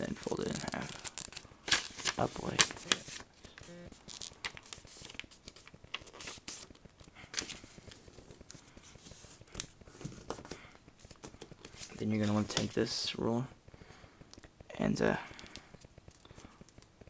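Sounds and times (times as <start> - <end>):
paper crackling: 0.0 - 13.2
paper rustling and crinkling: 0.0 - 13.2.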